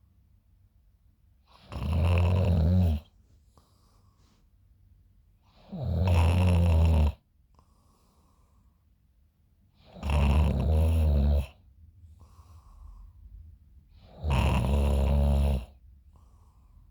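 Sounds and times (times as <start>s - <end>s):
woman snoring: 1.6s - 3.1s, 5.6s - 7.2s, 9.9s - 11.5s, 14.1s - 15.8s
faint breathing: 3.0s - 4.6s, 7.6s - 9.0s, 12.0s - 13.5s, 16.0s - 16.9s.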